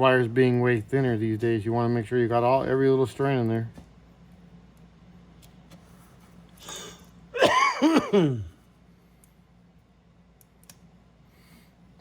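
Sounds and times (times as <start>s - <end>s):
person breathing: 11.3s - 11.8s.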